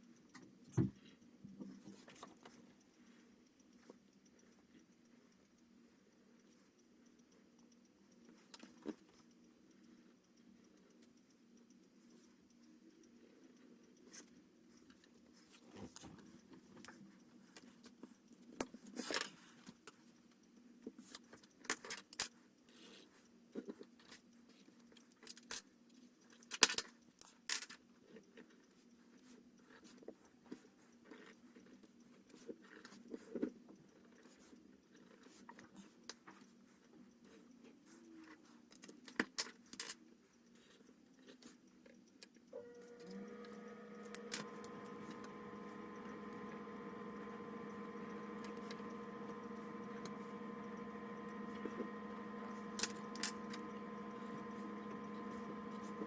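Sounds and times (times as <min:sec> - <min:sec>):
steady low hum: 0:42.6 - 0:56.0.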